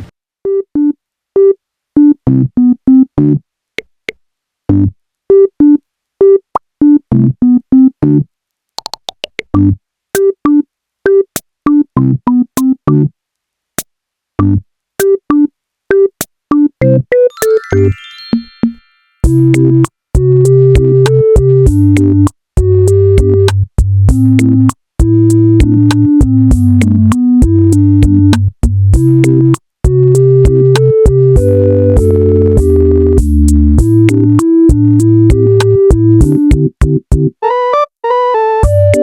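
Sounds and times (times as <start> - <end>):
bouncy electronic tune: 14.4 - 23.5, 29.0 - 39.0
drum machine beat: 19.2 - 37.4, 38.6 - 39.0.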